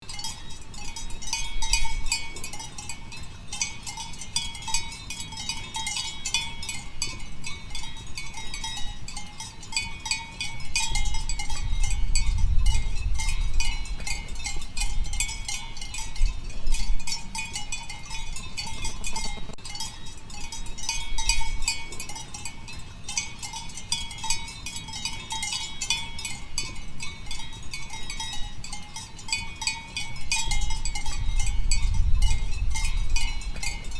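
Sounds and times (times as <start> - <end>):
goat bell clanking: 0.0 - 33.9.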